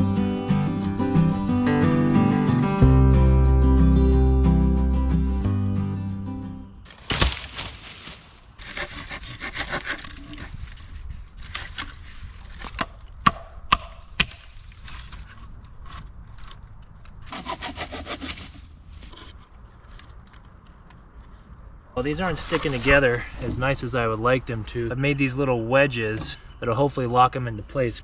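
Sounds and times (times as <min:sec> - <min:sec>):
rasping sawing strokes on wood: 0:08.6 - 0:10.4, 0:17.3 - 0:18.6.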